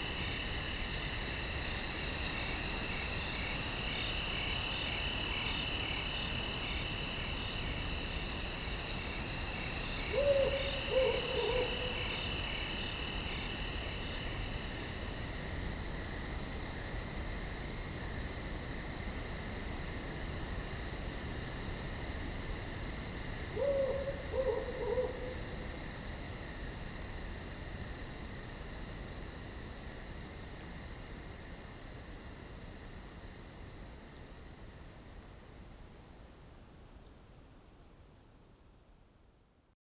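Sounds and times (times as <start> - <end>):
night insects trilling: 0.0 - 35.0
owl hooting: 10.1 - 12.0, 23.6 - 25.4.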